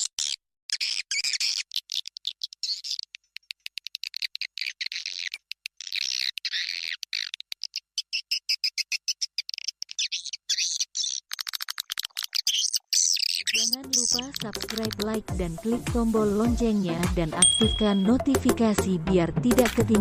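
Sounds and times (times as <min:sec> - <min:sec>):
high-pitched bird chirping: 0:00.0 - 0:15.2, 0:17.4 - 0:18.3
fast clicking pulses: 0:01.8 - 0:08.1, 0:10.9 - 0:15.3.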